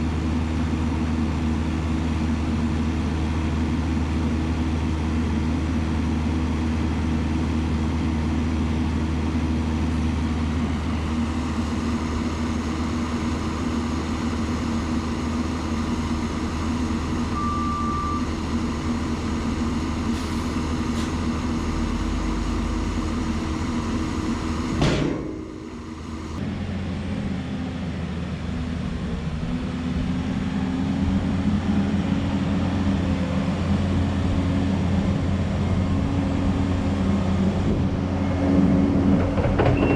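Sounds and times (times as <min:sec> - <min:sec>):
heavy diesel engine running: 0:00.0 - 0:39.9
sharp knock: 0:24.8 - 0:25.7.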